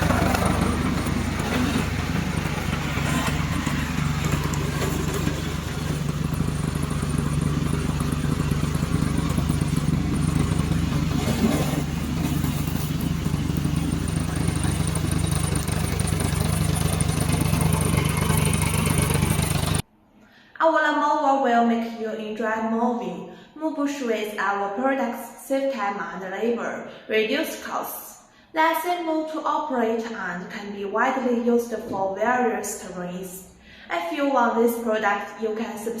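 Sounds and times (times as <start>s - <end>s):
lawn mower engine running: 0.0s - 19.8s.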